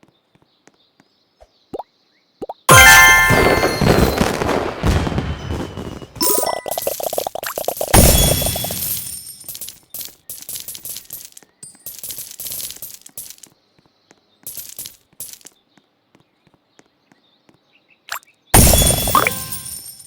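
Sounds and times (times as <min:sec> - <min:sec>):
small hard objects clicking and rattling: 0:06.2 - 0:13.6, 0:14.4 - 0:15.6, 0:18.6 - 0:20.0.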